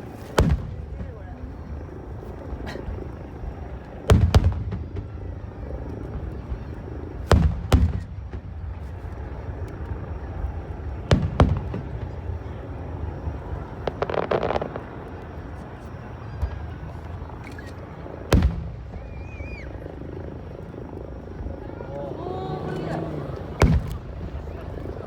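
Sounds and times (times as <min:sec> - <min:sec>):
firework crackles: 0:00.0 - 0:25.0
firework booms: 0:00.2 - 0:01.4, 0:04.0 - 0:05.2, 0:07.2 - 0:08.9, 0:10.8 - 0:17.6, 0:18.2 - 0:19.6, 0:22.7 - 0:24.8.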